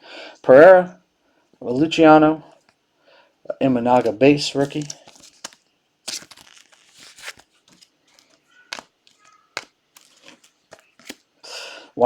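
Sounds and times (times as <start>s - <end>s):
trading cards rustling: 3.9s - 11.3s
cards clicking together: 4.0s - 11.2s.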